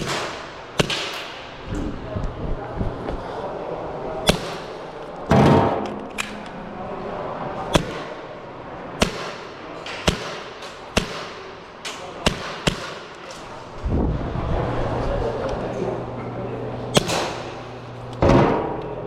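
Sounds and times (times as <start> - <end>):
airsoft pistol shots: 0.0 - 1.4, 4.2 - 4.8, 7.7 - 8.2, 9.0 - 11.6, 12.2 - 13.2, 17.0 - 17.6.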